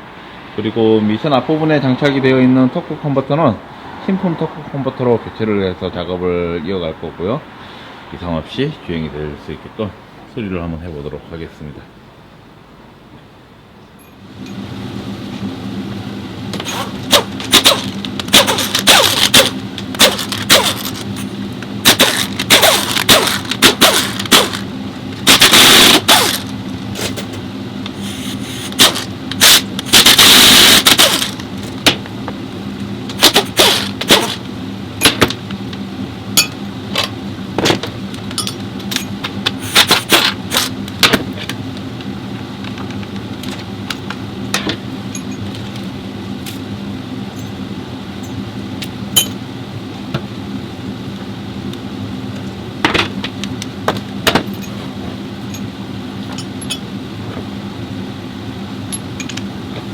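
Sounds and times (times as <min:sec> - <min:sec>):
steady shop hum: 0:00.0 - 0:59.9
air hissing bursts: 0:27.9 - 0:31.2
metal tools clanking and scraping: 0:38.3 - 0:40.7, 0:54.4 - 0:54.9, 0:56.3 - 0:56.9.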